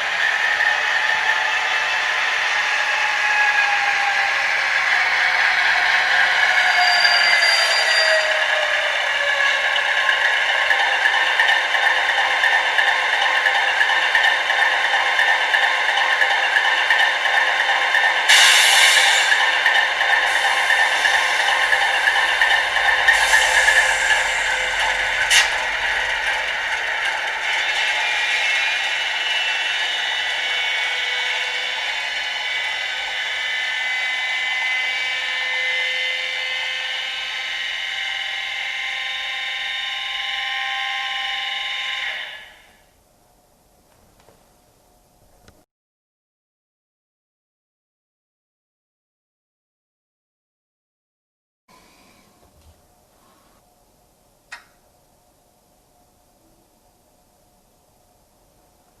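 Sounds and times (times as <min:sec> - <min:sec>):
model locomotive diesel sound: 0:00.0 - 0:43.8
loud hiss: 0:18.3 - 0:28.5.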